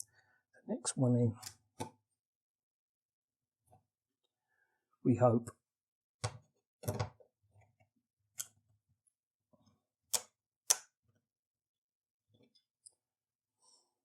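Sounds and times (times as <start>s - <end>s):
plastic clicks and knocks: 6.2s - 7.2s.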